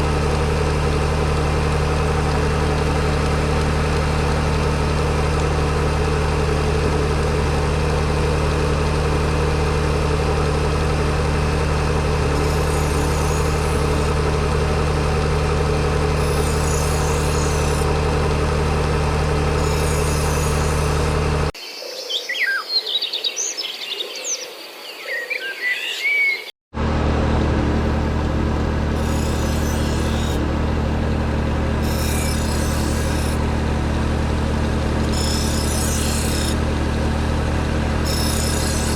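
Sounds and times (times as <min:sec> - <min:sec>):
machine humming: 0:00.0 - 0:21.5, 0:26.8 - 0:38.9
birds chirping: 0:21.6 - 0:26.5.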